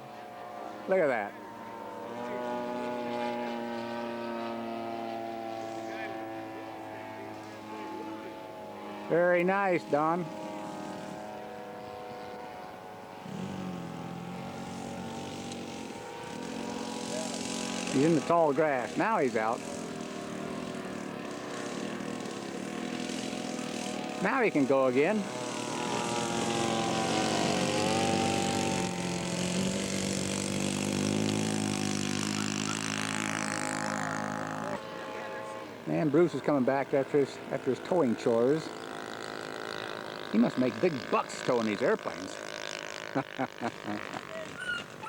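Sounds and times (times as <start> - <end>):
lower wavering engine note: 0.0 - 44.3
model airplane engine drone: 0.0 - 45.0.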